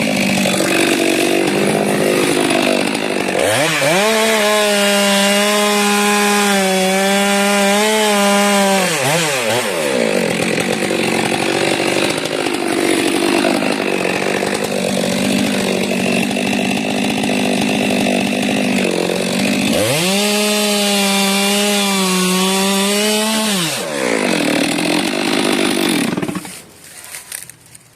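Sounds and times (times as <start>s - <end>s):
chainsaw cutting wood: 0.0s - 27.6s.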